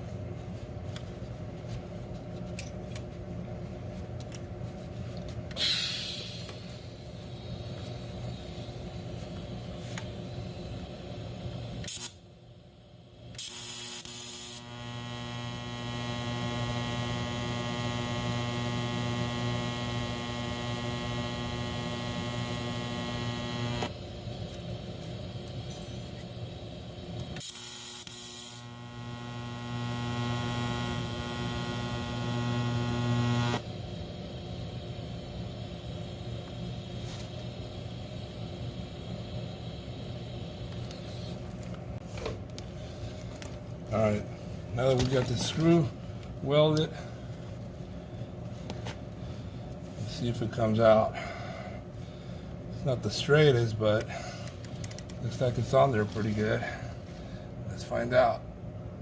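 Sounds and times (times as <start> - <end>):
welder hum: 5.2 - 51.4
welding arc buzzing: 5.5 - 12.2, 13.3 - 42.0
arc strike hiss: 5.6 - 12.2.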